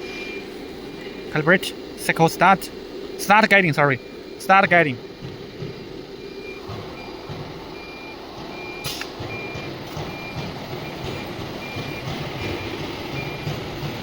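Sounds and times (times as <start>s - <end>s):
machine running noise: 0.0s - 14.0s
sharp click: 8.8s - 9.2s.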